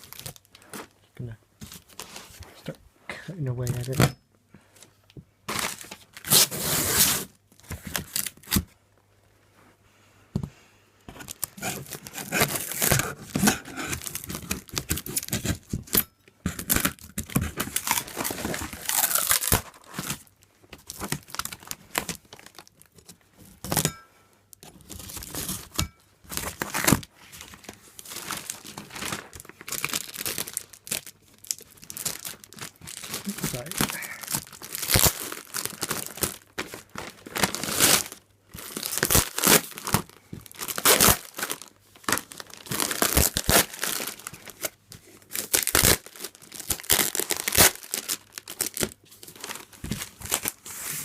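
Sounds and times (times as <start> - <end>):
packaging being ripped open: 5.5 - 8.6, 11.3 - 15.7, 16.6 - 20.3, 26.3 - 27.1, 28.0 - 49.6.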